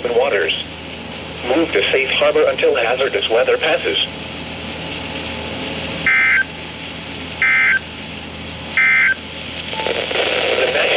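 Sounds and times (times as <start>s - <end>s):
steady radio hiss: 0.0s - 8.0s, 8.6s - 10.9s
digital tone bursts: 6.1s - 6.5s, 7.4s - 7.8s, 8.8s - 9.2s.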